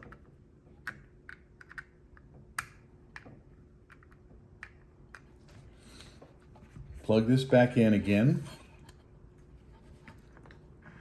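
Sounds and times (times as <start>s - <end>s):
small clicks and taps of connectors: 0.8s - 5.3s.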